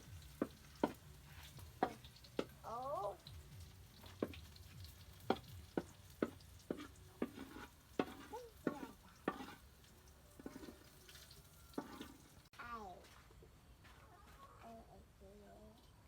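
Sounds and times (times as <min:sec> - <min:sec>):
utensil scraping in a pan: 0:00.0 - 0:02.6, 0:03.8 - 0:12.5
food sizzling: 0:00.0 - 0:12.6.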